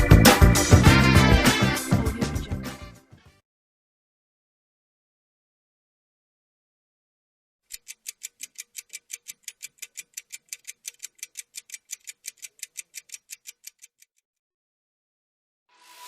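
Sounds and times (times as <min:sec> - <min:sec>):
rapid clock-like ticking: 0:07.7 - 0:14.2.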